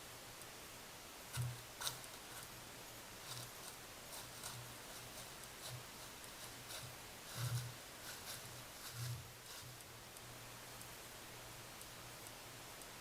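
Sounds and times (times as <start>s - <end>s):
microphone hiss: 0.0s - 13.0s
animal stepping through dry leaves: 3.2s - 9.7s.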